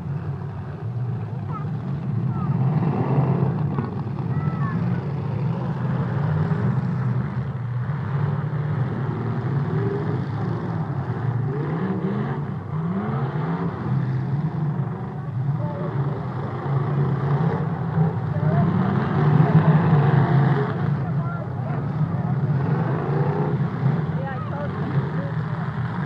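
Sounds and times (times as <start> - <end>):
car engines droning and revving: 0.0 - 26.0.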